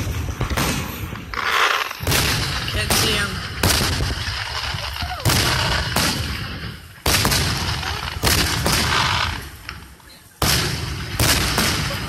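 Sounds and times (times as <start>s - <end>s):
firework shells booming: 0.0s - 12.0s.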